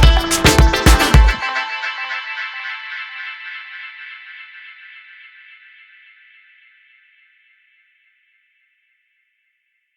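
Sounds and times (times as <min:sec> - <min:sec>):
high bright sustained chord: 0:00.0 - 0:04.2.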